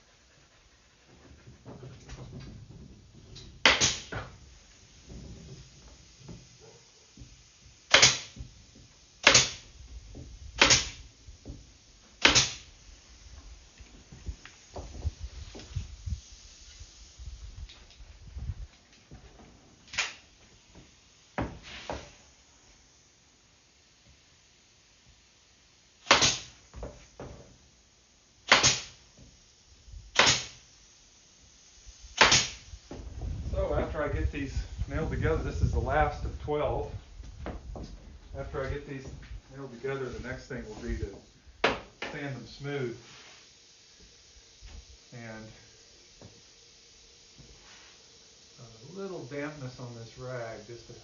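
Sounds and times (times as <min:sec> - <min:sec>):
pin tacker firing: 0:03.6 - 0:04.3, 0:07.9 - 0:08.4, 0:09.2 - 0:09.6, 0:10.6 - 0:11.1, 0:12.2 - 0:12.7, 0:30.1 - 0:30.6.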